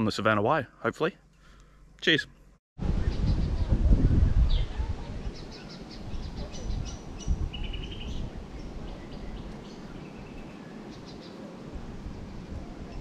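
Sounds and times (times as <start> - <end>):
birds chirping and trilling: 3.0 - 11.6.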